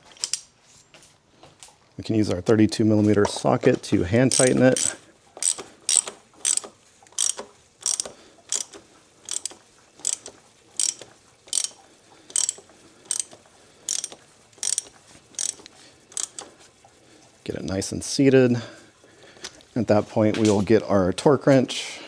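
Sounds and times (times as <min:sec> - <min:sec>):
ratchet wrench clicking: 0:00.1 - 0:00.5, 0:04.2 - 0:16.5.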